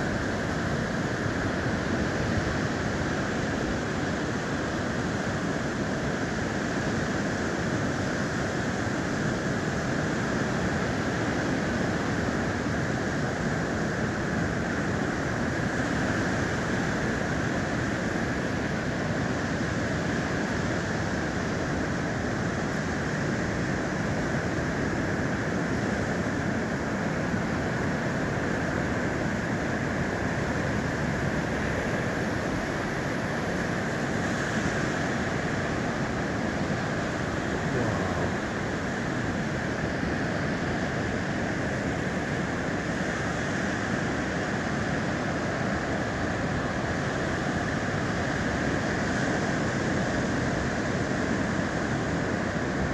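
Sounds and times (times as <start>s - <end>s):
sea surf rushing: 24.5s - 52.9s.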